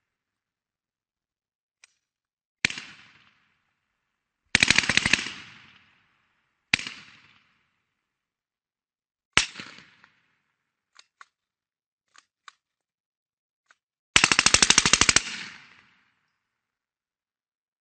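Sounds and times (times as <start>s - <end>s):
automatic gunfire burst: 4.6s - 5.4s, 14.2s - 15.7s.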